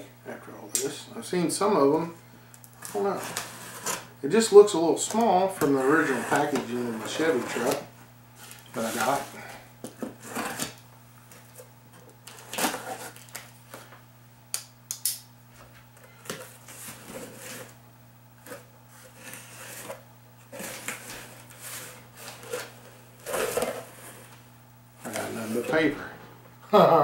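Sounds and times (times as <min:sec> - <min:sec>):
packing paper rustling: 0:05.0 - 0:11.6, 0:12.2 - 0:13.9.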